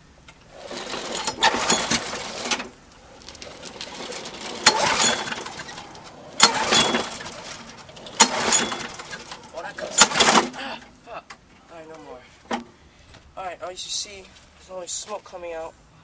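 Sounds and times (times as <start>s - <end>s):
recoil starter pulls: 0.2s - 11.4s
lawn mower engine turning over: 0.2s - 11.5s.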